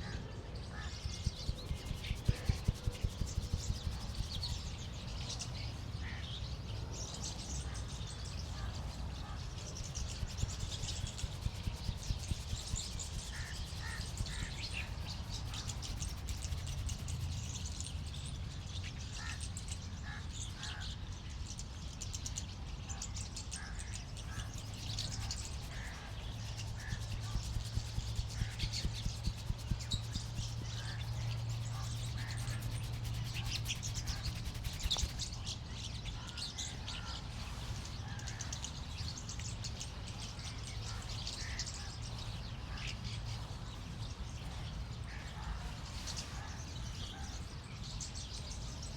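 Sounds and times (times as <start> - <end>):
steady low hum: 0.0 - 19.7, 23.5 - 36.4
birds chirping: 0.0 - 37.2
rhythmic hand tapping: 1.2 - 4.8, 10.0 - 18.1, 24.5 - 35.4.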